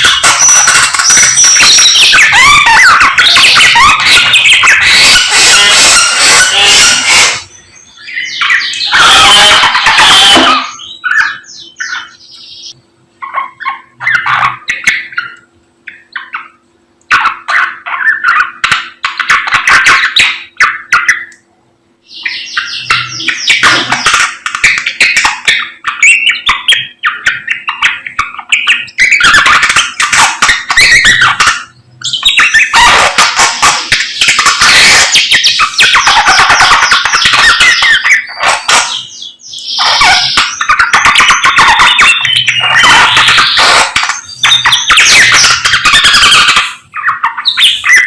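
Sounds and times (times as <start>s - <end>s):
songbird singing: 22.0s - 32.9s.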